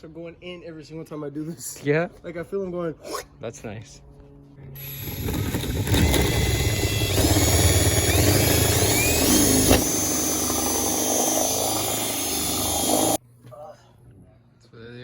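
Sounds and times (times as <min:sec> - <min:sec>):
electric drill boring: 0:04.8 - 0:13.2.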